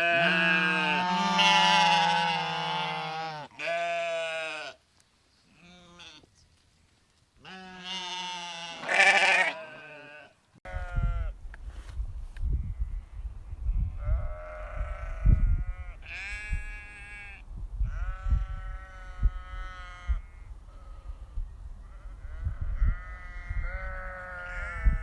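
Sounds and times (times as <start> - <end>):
sheep bleating: 0.0 - 4.8, 5.5 - 6.3, 7.4 - 11.3, 14.0 - 21.1, 22.0 - 25.0.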